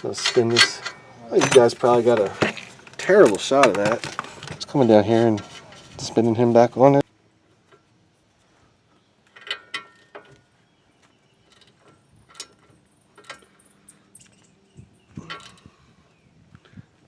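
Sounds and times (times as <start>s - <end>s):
hand tools clinking on metal nut: 0.0s - 6.0s, 9.3s - 10.4s, 11.4s - 14.4s, 15.2s - 15.7s.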